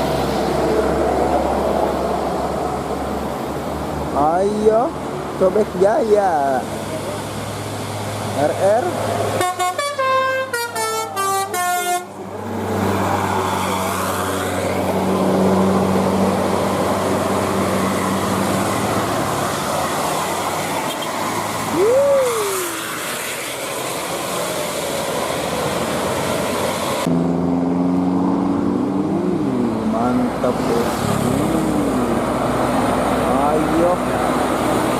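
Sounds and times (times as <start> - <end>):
bus engine running: 0.0 - 27.7
road noise: 0.0 - 34.9
multi-tone bus horn: 9.4 - 12.2.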